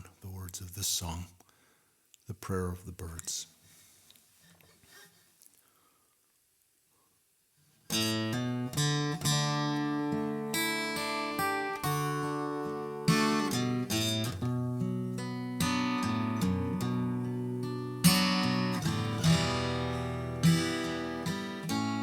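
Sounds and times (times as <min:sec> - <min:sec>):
acoustic guitar strumming: 0:07.9 - 0:22.0.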